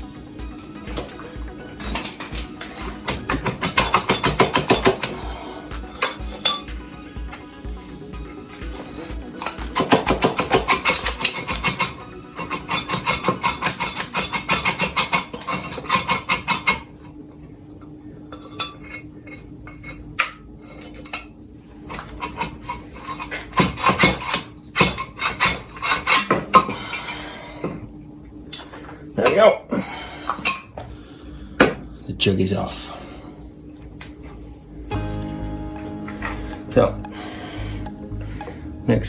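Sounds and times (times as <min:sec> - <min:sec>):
rapid metallic knocking: 0:03.2 - 0:05.2, 0:09.4 - 0:16.8
faint steady hum: 0:15.1 - 0:39.0.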